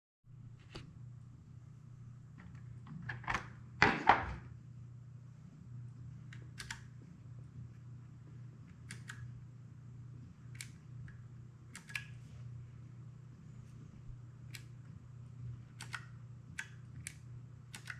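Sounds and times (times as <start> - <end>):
steady low hum: 0.3 - 17.9
keyboard key clicks: 6.4 - 6.9, 8.9 - 9.2, 11.8 - 12.2, 15.8 - 17.9.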